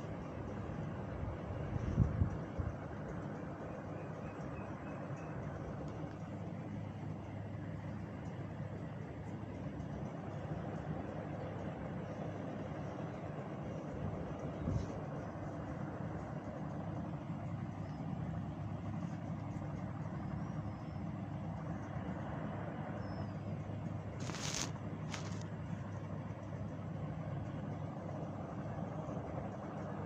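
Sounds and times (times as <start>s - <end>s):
short hiss: 24.2s - 25.4s.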